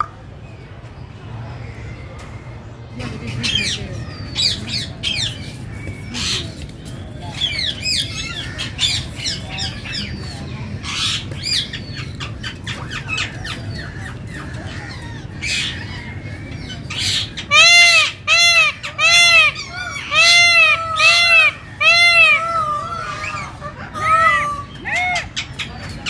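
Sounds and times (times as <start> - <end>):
chirps and squawks: 1.5 - 26.0
peafowl honking calls: 16.9 - 25.7.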